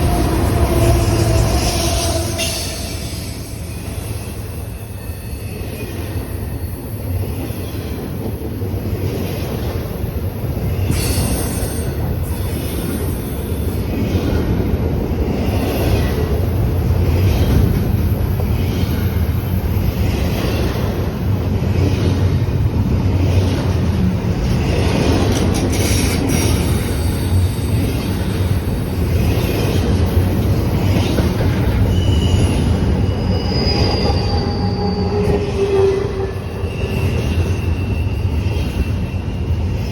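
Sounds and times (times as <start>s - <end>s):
train cars rumbling past: 0.0s - 39.9s
high-pitched wheel squeals: 31.6s - 39.9s.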